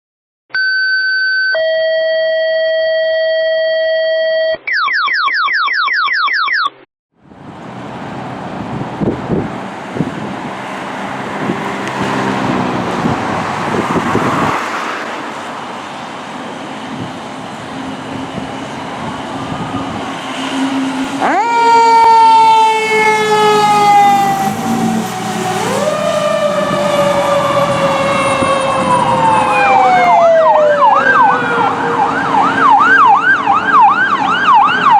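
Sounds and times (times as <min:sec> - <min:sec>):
street and engine noise: 0:07.1 - 0:34.9
fire truck sirens wailing: 0:07.4 - 0:34.9.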